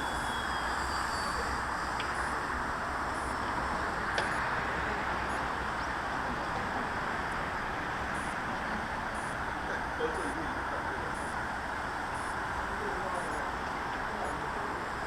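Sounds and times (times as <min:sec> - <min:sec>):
light aircraft engine drone: 0:00.0 - 0:15.0.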